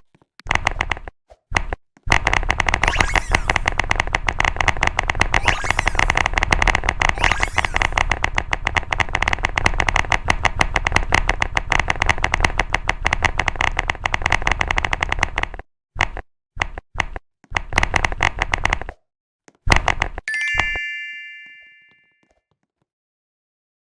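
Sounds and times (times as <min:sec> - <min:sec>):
rapid typing on keyboard: 0:02.1 - 0:15.5.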